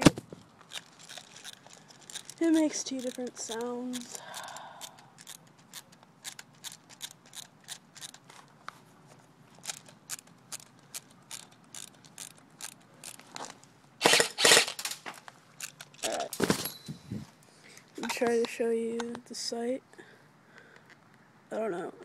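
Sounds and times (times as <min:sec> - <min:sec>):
airsoft rifle ratcheting clicks: 0:00.6 - 0:08.3, 0:09.5 - 0:16.2
airsoft rifle sharp bursts: 0:14.0 - 0:15.0.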